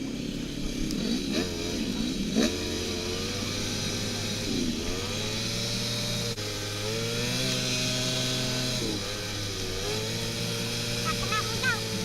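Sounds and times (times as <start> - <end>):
snowmobile engine under throttle: 0.0 - 12.0.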